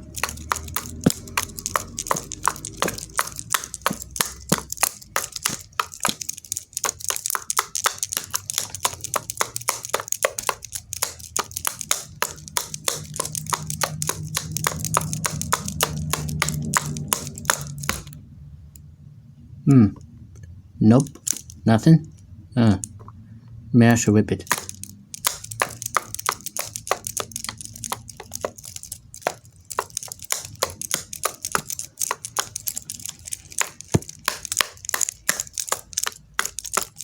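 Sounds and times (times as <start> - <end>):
pencil tapping on hard surface: 0.0 - 18.2, 24.5 - 37.0.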